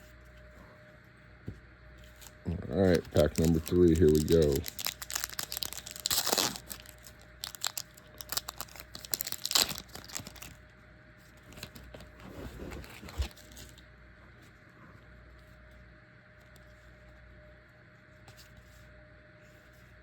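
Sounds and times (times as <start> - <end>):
rustling of cards: 2.0 - 10.6
wrapper crinkling and tearing: 2.1 - 10.6.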